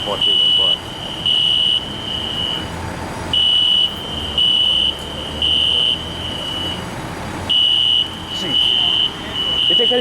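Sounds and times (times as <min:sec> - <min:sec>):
fire alarm beeping: 0:00.1 - 0:02.6, 0:03.4 - 0:06.8, 0:07.5 - 0:10.0
faint alarm tone: 0:07.5 - 0:10.0.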